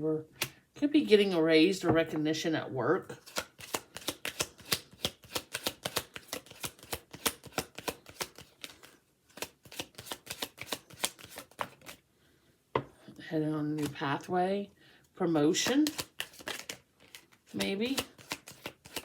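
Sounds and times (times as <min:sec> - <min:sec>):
cards being shuffled: 0:03.2 - 0:12.0, 0:13.8 - 0:14.0, 0:15.6 - 0:19.0.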